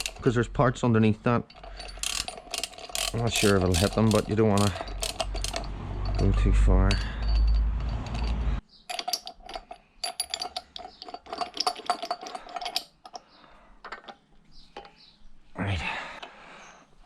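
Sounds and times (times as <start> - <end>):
ratchet wrench clicking: 0.0 - 0.2, 1.5 - 5.7.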